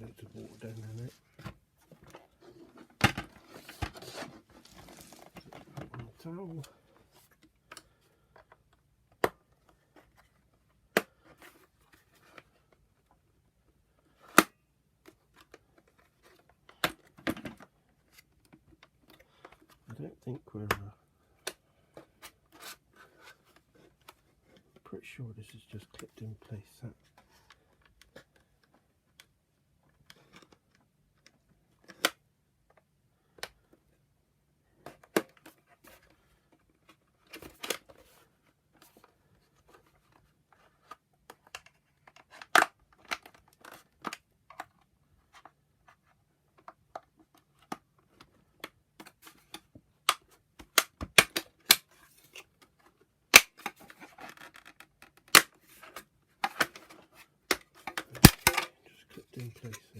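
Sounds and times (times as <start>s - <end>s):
plastic clips snapping: 57.5s - 58.7s.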